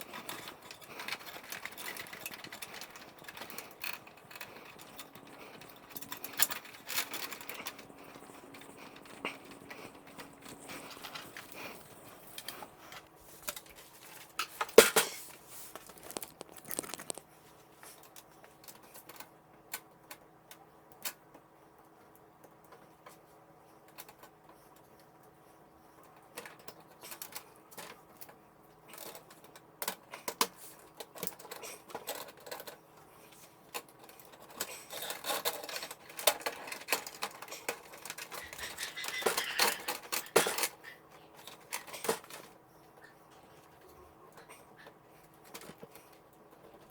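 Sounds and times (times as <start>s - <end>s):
computer parts clicking and rattling: 0.0s - 15.1s, 15.8s - 17.3s.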